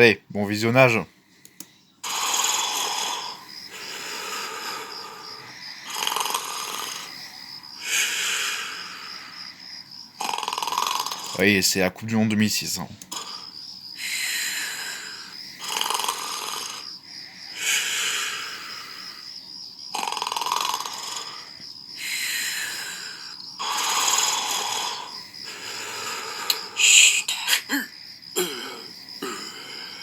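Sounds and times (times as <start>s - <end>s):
cartoon snoring: 2.0s - 9.4s, 10.2s - 11.7s, 13.1s - 16.9s, 17.5s - 19.3s, 19.9s - 30.0s.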